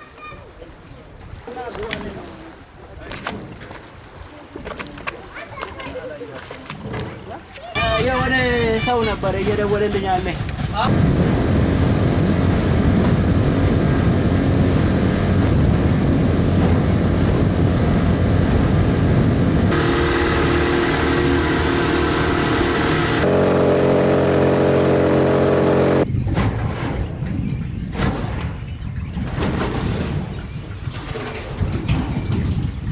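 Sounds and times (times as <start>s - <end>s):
boat motor running: 10.4s - 26.1s.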